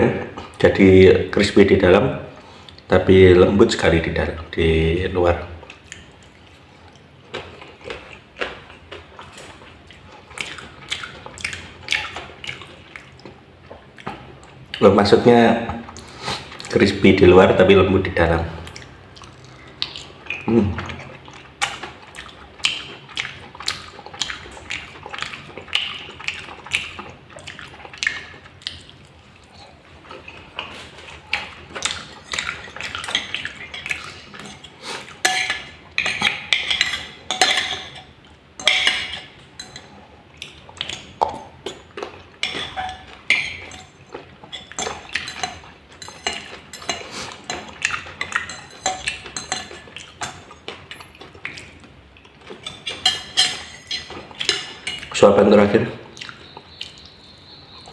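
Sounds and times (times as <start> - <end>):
cutlery clinking on a plate: 35.2 - 39.9, 41.7 - 51.7, 52.5 - 55.2.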